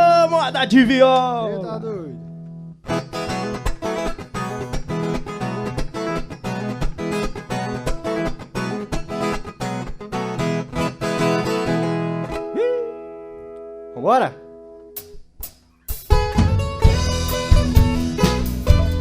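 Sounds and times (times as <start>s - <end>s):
fast plucked folk guitar: 2.9s - 12.4s, 16.1s - 19.0s.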